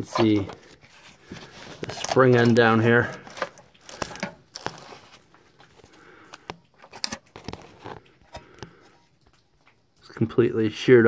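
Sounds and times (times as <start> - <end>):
crinkly rustling: 0.0 - 9.9.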